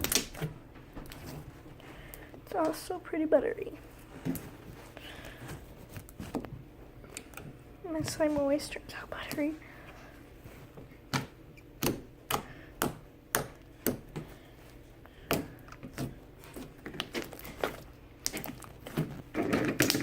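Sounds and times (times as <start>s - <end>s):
slime squished by hand: 15.3s - 20.0s.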